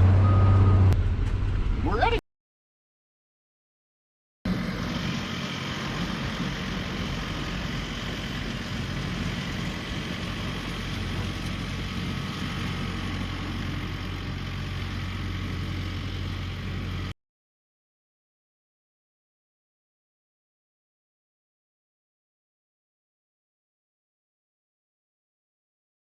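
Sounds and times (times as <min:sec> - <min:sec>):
heavy vehicle engine droning: 0:00.0 - 0:02.2, 0:04.5 - 0:17.2.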